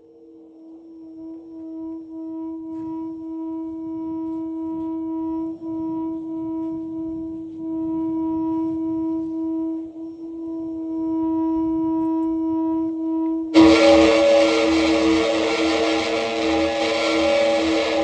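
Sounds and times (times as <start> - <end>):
held drone note: 13.6 - 18.0
low rumbling noise: 13.6 - 18.0.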